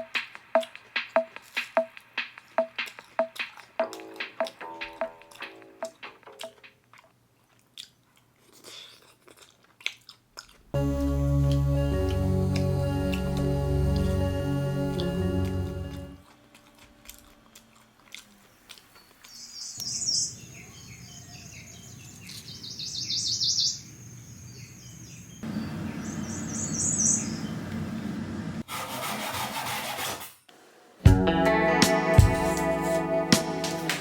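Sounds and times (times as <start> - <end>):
small birds chirping: 17.2 - 28.3.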